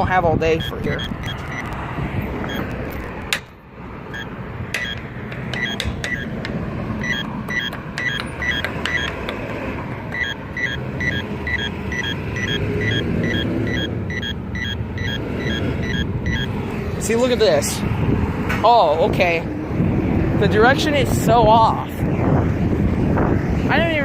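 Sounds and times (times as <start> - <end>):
passing traffic: 0.0 - 24.0
short high beeps: 4.2 - 5.0, 5.6 - 6.3, 7.0 - 9.1, 10.2 - 16.5.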